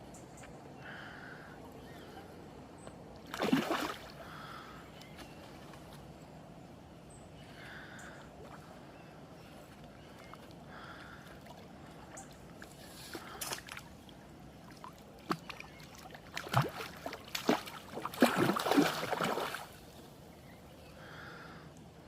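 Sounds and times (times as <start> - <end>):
fish splashing in water: 3.3 - 4.1, 15.2 - 19.8.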